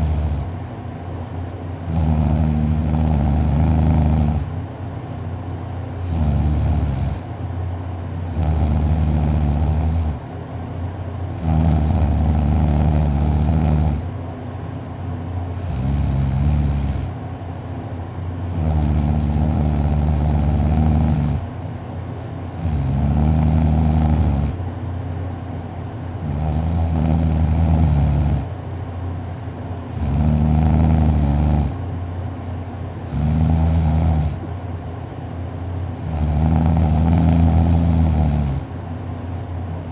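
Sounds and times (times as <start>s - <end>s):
person snoring loudly: 0.0s - 0.5s, 1.9s - 4.5s, 6.0s - 7.2s, 8.3s - 10.2s, 11.4s - 14.0s, 15.6s - 17.1s, 18.5s - 21.5s, 22.6s - 24.6s, 26.2s - 28.5s, 29.9s - 31.8s, 33.1s - 34.4s, 36.0s - 38.7s
quiet breathing: 0.0s - 0.6s.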